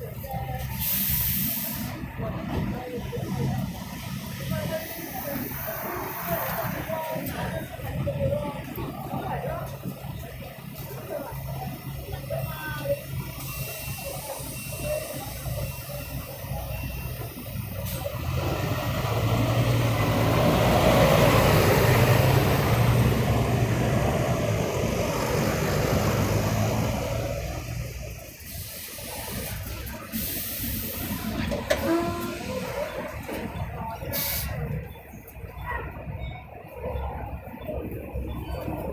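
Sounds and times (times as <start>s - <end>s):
city street traffic: 0.0s - 38.9s
vehicle passing close: 18.1s - 28.0s.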